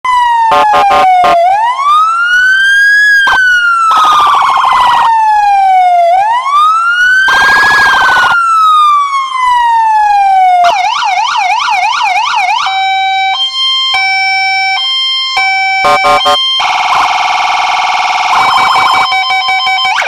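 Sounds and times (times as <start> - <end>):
emergency vehicle siren wailing: 0.1 - 20.0
harsh buzzy horn blasts: 0.5 - 1.4, 15.8 - 16.4.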